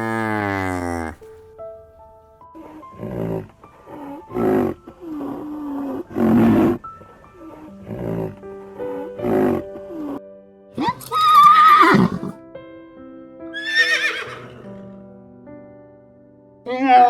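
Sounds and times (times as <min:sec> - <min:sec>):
long low-pitched animal call: 0:00.0 - 0:01.3, 0:02.6 - 0:10.2
loud animal calls: 0:00.0 - 0:01.3, 0:05.9 - 0:06.8, 0:10.8 - 0:12.4
background music with sustained notes: 0:00.0 - 0:17.0.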